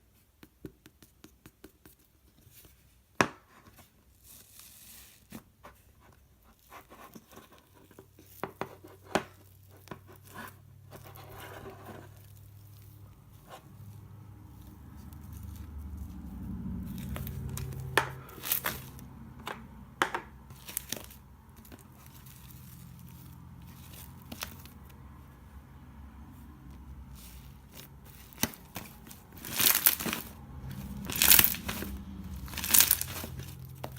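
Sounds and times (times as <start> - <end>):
crinkling and tearing: 11.0 - 19.2, 20.5 - 25.0, 27.0 - 33.9.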